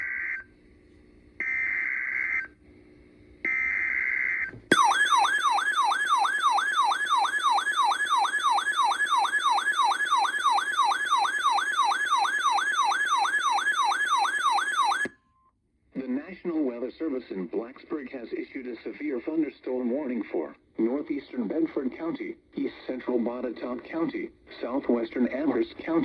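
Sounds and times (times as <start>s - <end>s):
warbling alert tone: 4.7s - 10.2s.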